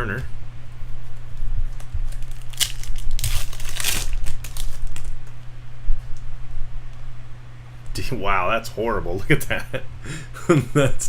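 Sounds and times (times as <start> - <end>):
low electrical hum: 0.0 - 11.0
foil wrapper crinkling and tearing: 2.1 - 5.2.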